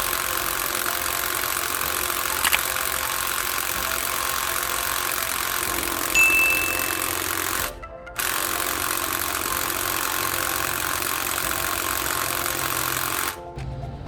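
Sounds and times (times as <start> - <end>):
impact wrench hammering: 0.0 - 7.7.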